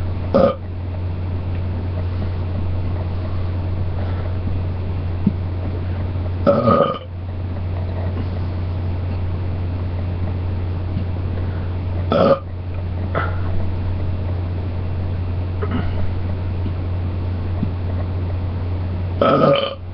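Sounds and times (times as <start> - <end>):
steady low hum: 0.0 - 19.9
person belching: 0.3 - 0.6, 6.4 - 7.1, 12.1 - 12.5, 19.2 - 19.8.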